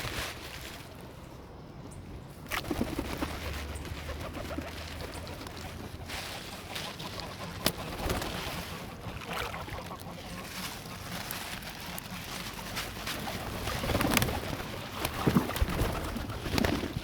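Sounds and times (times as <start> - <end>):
geese and ducks calling: 3.2 - 16.8.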